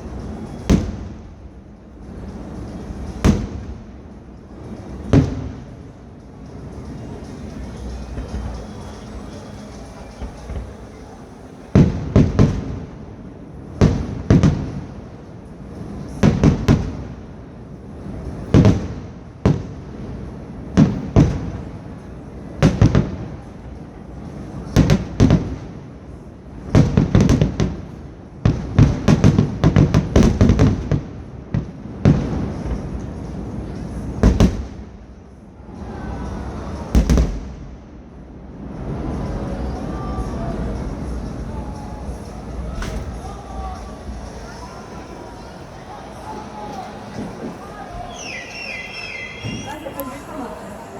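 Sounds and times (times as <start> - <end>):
fireworks exploding: 0.0 - 23.4, 24.6 - 25.8, 26.6 - 35.0, 36.9 - 37.8, 40.1 - 50.9.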